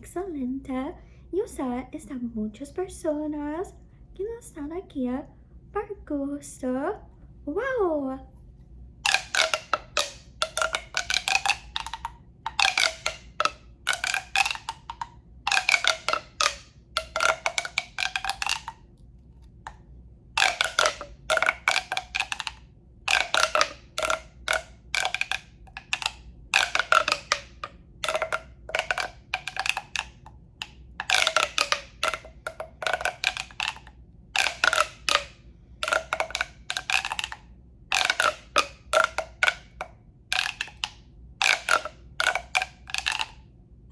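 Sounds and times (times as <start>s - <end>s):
hollow tube being tapped: 9.0s - 43.4s.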